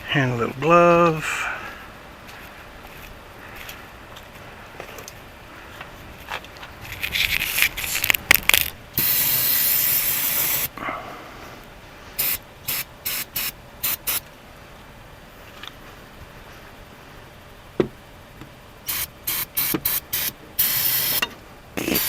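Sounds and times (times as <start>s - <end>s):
rustling and clicking of handling: 2.2s - 8.8s
aerosol spray hissing: 9.0s - 10.8s, 12.2s - 14.2s, 18.9s - 21.2s, 21.8s - 22.0s.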